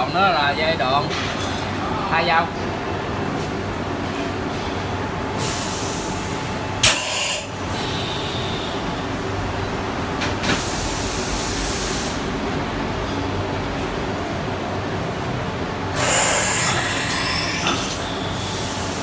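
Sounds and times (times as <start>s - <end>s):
steady machine hum: 1.6s - 19.0s
compressed air hissing: 5.4s - 8.8s, 10.5s - 12.3s, 16.0s - 19.0s.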